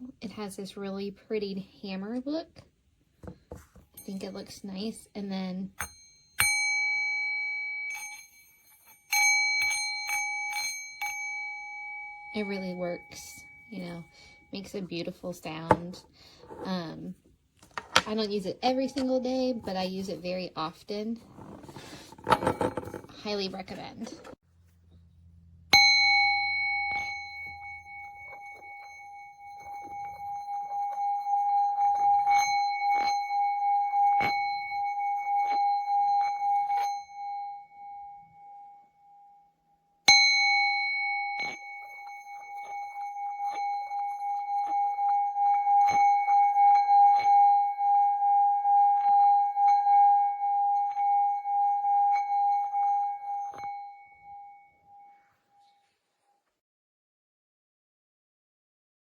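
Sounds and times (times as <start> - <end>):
singing bowl rim rubbed: 5.8 - 17.2, 18.0 - 24.3, 26.2 - 39.0, 40.6 - 56.0
singing bowl struck: 25.7 - 38.4, 40.1 - 55.1.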